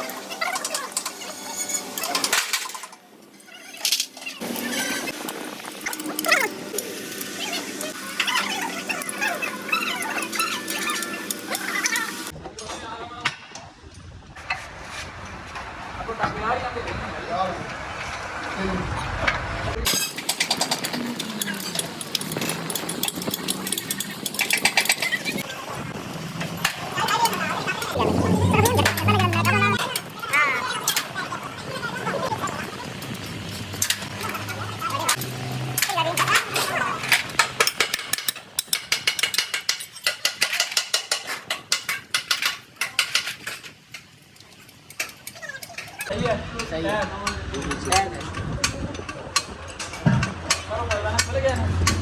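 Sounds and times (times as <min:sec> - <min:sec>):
metallic clicking of tools: 0:19.9 - 0:25.4
background voices: 0:27.9 - 0:29.8.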